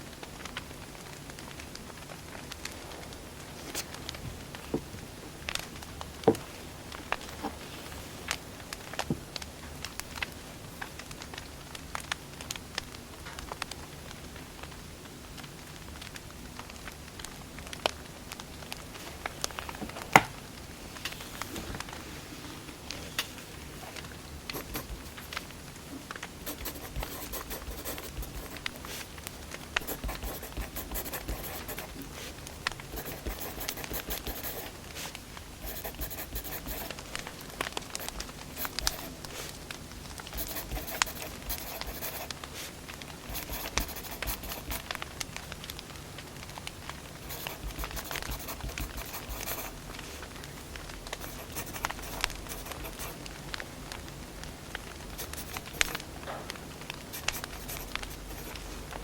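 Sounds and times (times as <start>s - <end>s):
firewood crackling and popping: 0.1s - 7.4s, 8.3s - 21.2s, 25.1s - 26.4s, 28.6s - 29.8s, 36.9s - 40.4s, 42.2s - 43.3s, 44.8s - 47.2s, 49.8s - 51.2s.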